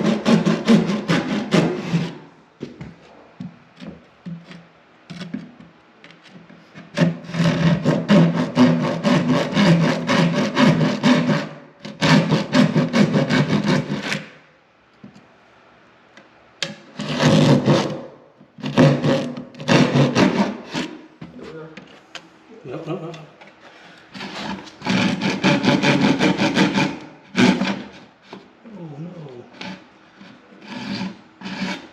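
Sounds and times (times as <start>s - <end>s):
saw cutting through wood: 0.0s - 2.2s, 6.9s - 14.3s, 17.0s - 21.0s, 24.1s - 28.1s, 29.5s - 31.9s.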